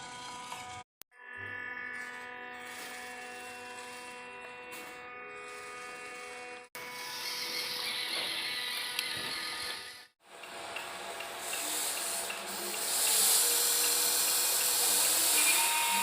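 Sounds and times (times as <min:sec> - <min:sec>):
small electric motors whining: 0:00.0 - 0:10.2, 0:10.8 - 0:16.0
rasping gritty noise: 0:01.9 - 0:09.2.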